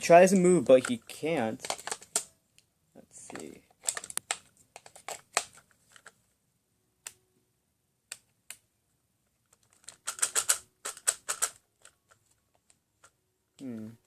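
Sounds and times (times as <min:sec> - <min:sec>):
toy robot plastic clicks: 0:09.6 - 0:12.0.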